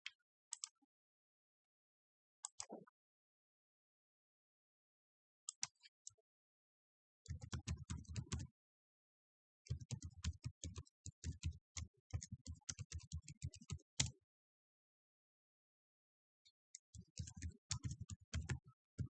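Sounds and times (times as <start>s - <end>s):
typing on keyboard: 7.3s - 8.4s, 9.7s - 14.1s, 16.9s - 18.6s.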